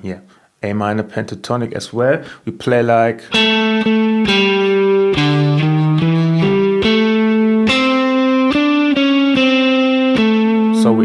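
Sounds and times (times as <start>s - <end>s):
guitar single-note lick: 3.3s - 11.0s.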